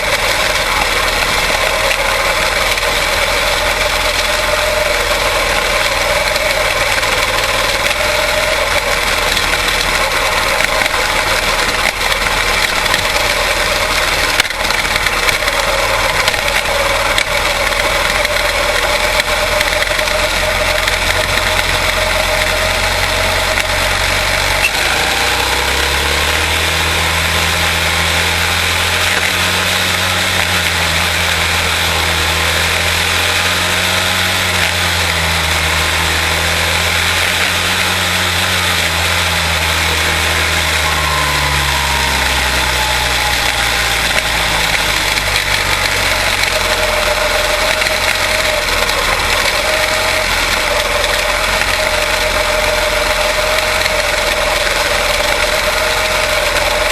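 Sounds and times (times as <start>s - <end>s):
small race car engines: 0.0s - 56.9s.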